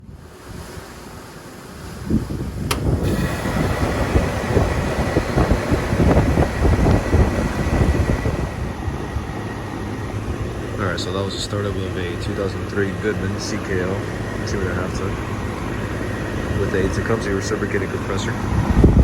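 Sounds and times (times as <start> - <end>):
air conditioner compressor and fan running: 0.0 - 19.0
steady whine: 2.5 - 19.0
sharp click: 2.7 - 3.0.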